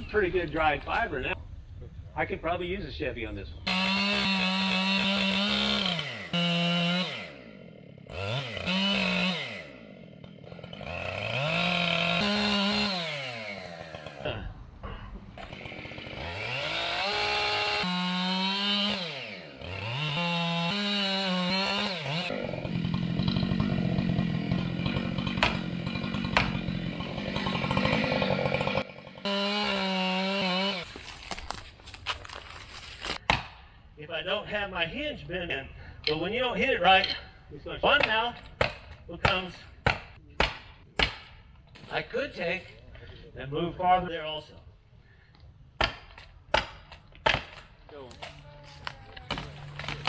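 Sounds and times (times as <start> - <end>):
chainsaw cutting wood: 3.7 - 14.3, 15.2 - 33.6, 38.0 - 41.9, 45.8 - 50.0
wood cracking: 21.5 - 28.8, 29.4 - 33.6, 45.8 - 50.0.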